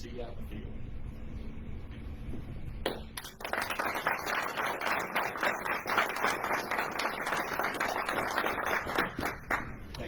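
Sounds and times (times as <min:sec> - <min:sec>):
audience applauding: 0:03.2 - 0:09.8.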